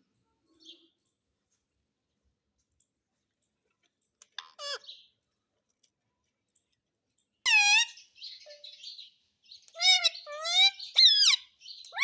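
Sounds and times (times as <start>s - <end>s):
parrot calling: 4.4s - 5.0s, 7.4s - 8.0s, 9.7s - 12.0s.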